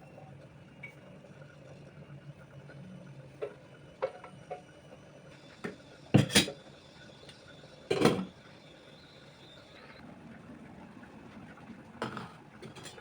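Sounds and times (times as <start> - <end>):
dishes clattering knocks: 6.2 - 6.6, 7.9 - 8.3
dishes clinking: 6.2 - 6.6, 7.9 - 8.3, 12.0 - 13.0.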